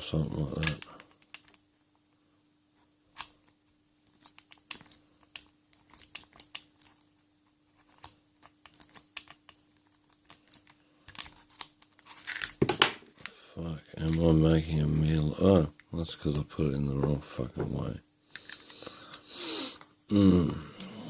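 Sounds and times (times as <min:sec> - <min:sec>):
padlock parts clicking: 0:04.1 - 0:07.0
faint hum: 0:13.1 - 0:21.0.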